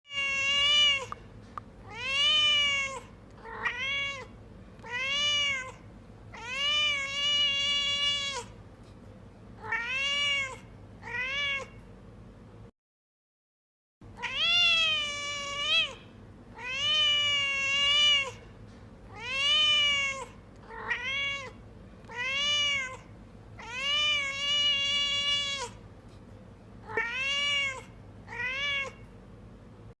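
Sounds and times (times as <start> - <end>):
cat meowing: 0.1 - 1.2, 1.9 - 8.5, 9.6 - 11.8, 14.2 - 18.4, 19.1 - 25.8, 26.8 - 29.1.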